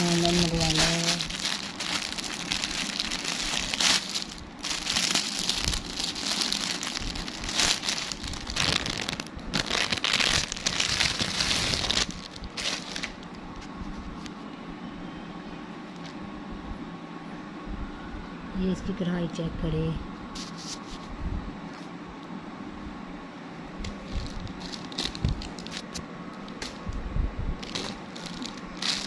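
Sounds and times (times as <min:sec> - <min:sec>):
packaging crinkling and rustling: 0:00.0 - 0:14.3, 0:23.9 - 0:26.8, 0:27.6 - 0:29.0.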